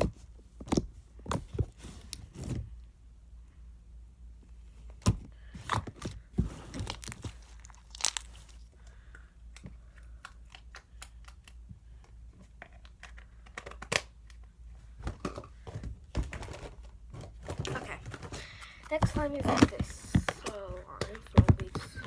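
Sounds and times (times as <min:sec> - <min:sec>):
slime squeezed with sticky pops: 0:06.8 - 0:08.5.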